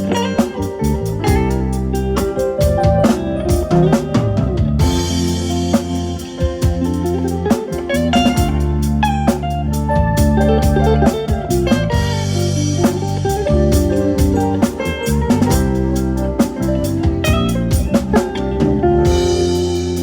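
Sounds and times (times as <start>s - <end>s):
bass: 0.0s - 20.0s
drum kit steady beat: 0.0s - 20.0s
plucked guitar-like melody: 0.0s - 20.0s.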